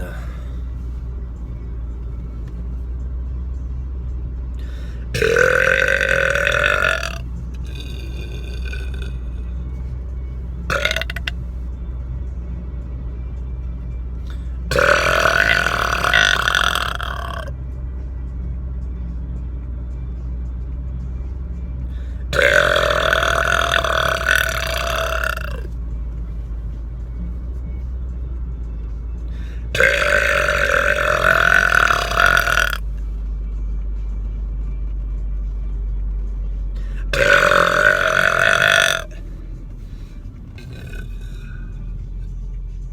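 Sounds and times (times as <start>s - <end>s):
man burping: 0.0s - 0.4s, 5.2s - 9.2s, 10.7s - 11.3s, 14.7s - 17.5s, 22.3s - 25.7s, 29.7s - 32.8s, 37.1s - 39.2s, 40.6s - 41.4s
low rumble of car: 0.0s - 42.9s.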